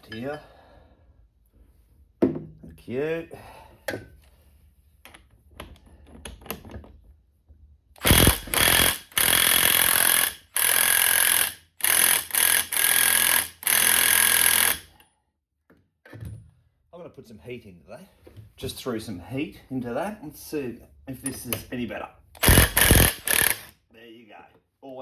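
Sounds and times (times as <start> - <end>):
impact wrench hammering: 8.0 - 15.0, 22.4 - 23.7.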